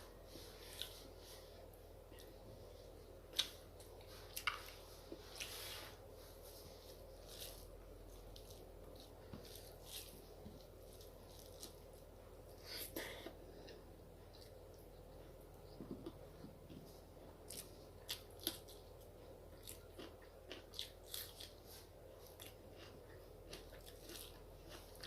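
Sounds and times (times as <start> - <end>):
chewing and mouth clicks: 17.5 - 21.6.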